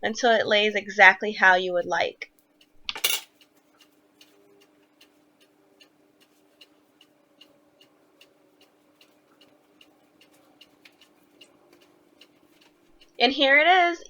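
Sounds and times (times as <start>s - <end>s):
faint even ticking: 3.4s - 13.3s.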